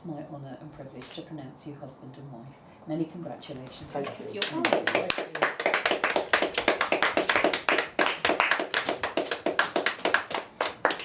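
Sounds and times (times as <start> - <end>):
people applauding: 4.3 - 11.0.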